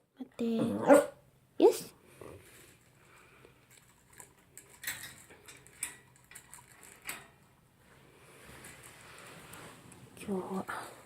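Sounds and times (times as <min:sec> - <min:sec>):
dog crunching dry food: 0:02.6 - 0:07.5.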